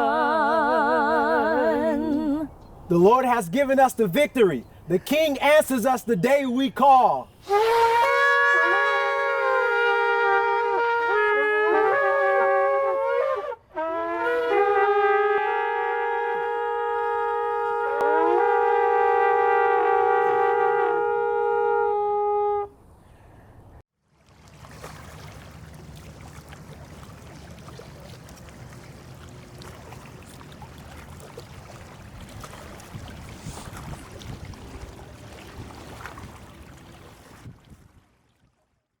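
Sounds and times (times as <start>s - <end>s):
wind and water rushing: 0.0s - 9.7s, 24.2s - 38.6s
long held horn notes: 7.4s - 22.8s.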